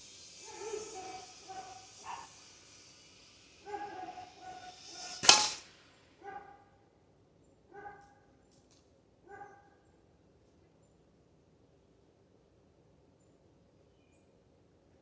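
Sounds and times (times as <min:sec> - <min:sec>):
dog barking: 0:00.4 - 0:02.4, 0:03.6 - 0:05.3, 0:06.2 - 0:06.7, 0:07.7 - 0:08.3, 0:09.2 - 0:09.8
air rifle shot: 0:04.7 - 0:05.9.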